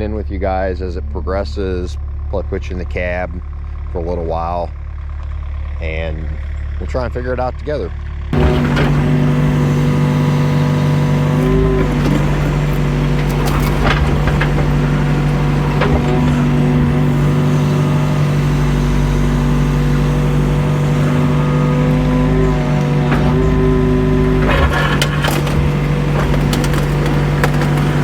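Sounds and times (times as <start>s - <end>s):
excavator diesel engine running: 8.0s - 28.0s
sharp clicks and knocks: 8.4s - 28.0s.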